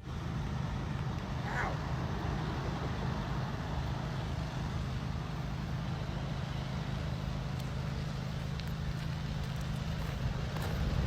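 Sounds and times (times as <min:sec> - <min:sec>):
vehicle engine and road noise: 0:00.0 - 0:11.0.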